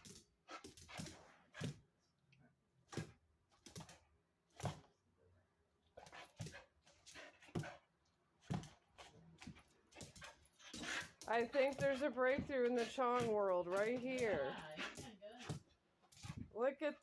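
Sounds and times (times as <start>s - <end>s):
dogs playing: 5.9s - 17.0s.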